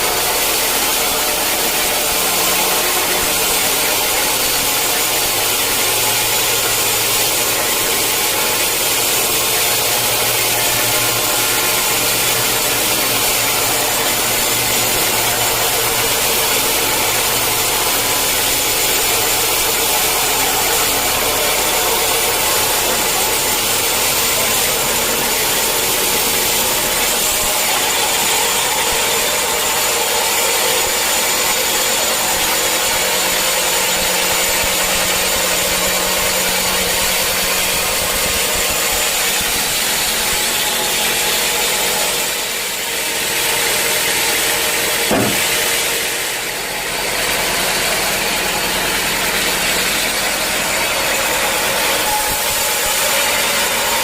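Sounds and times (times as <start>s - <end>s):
sawmill saw whining: 0.0s - 54.0s
sharp knock: 45.0s - 45.8s.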